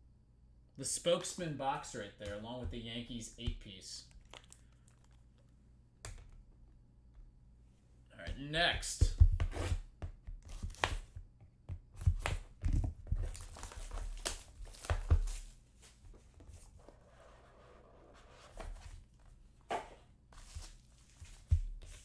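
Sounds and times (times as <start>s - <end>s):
wrapper crinkling and tearing: 4.1s - 5.2s, 13.2s - 15.1s.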